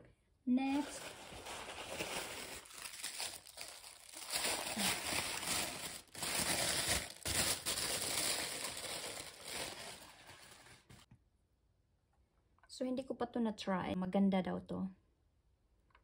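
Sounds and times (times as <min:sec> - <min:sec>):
packaging crinkling and rustling: 0:00.7 - 0:11.1.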